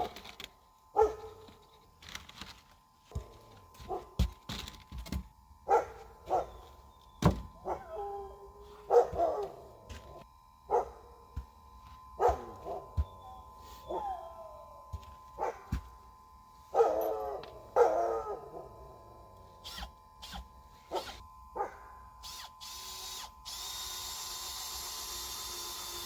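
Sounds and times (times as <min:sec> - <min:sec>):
dog barking and yelping: 0:01.0 - 0:01.3, 0:05.7 - 0:06.6, 0:07.6 - 0:09.7, 0:12.2 - 0:14.7, 0:16.8 - 0:18.8, 0:20.9 - 0:21.8
sharp knocks and thunks: 0:07.2 - 0:07.6.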